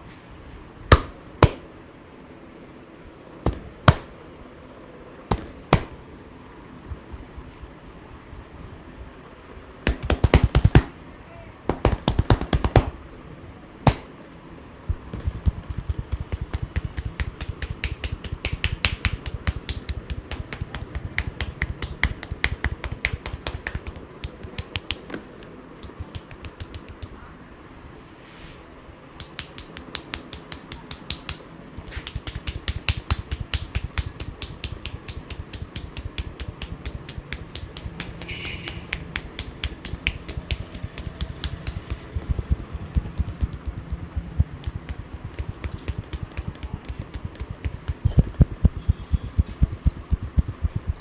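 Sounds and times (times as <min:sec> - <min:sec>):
hands slapping on body: 0:00.9 - 0:01.6, 0:03.5 - 0:04.1, 0:05.3 - 0:06.0, 0:09.9 - 0:10.9, 0:11.7 - 0:13.0, 0:13.9 - 0:14.1, 0:14.9 - 0:25.2, 0:25.8 - 0:27.1, 0:29.2 - 0:51.0
sharp crack: 0:13.9 - 0:14.1.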